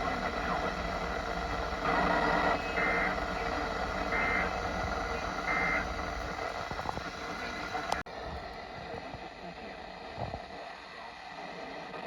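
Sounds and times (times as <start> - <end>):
buzzy digital data bursts: 0.0 - 8.0
steady radio hiss: 0.0 - 12.0.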